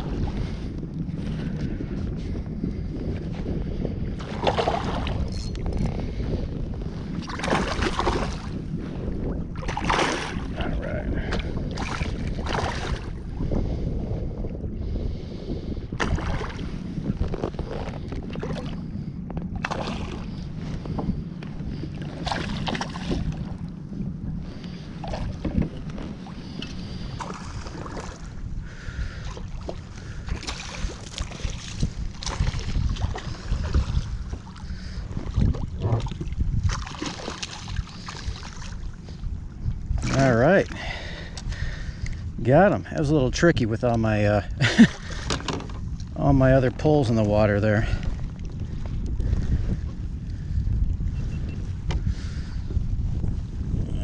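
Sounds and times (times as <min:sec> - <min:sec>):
water lapping against hull: 0:00.0 - 0:54.0
wind buffeting microphone: 0:00.0 - 0:54.0
splashes and knocks: 0:04.2 - 0:05.7, 0:07.2 - 0:08.5, 0:09.6 - 0:10.7, 0:11.3 - 0:13.1, 0:16.0 - 0:16.6, 0:19.6 - 0:20.2, 0:22.2 - 0:23.4, 0:29.6 - 0:34.1, 0:35.3 - 0:38.7.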